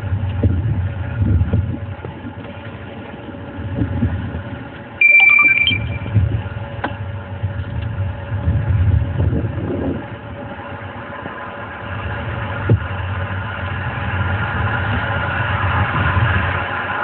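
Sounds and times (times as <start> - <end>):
vehicle engine rumble: 0.0 - 5.0, 5.6 - 17.0
high electronic beep: 5.0 - 6.2.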